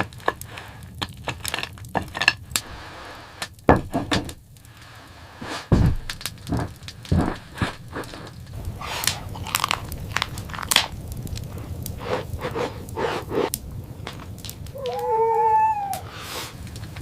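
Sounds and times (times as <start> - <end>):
steady low rumble: 4.6 - 15.0
dog whining: 14.8 - 16.1.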